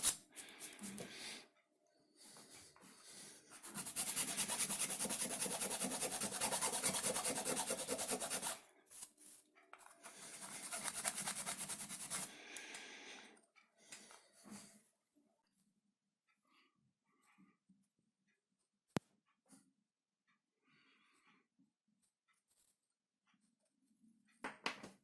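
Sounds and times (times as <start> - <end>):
wood being rubbed: 3.5 - 8.6, 10.2 - 12.3.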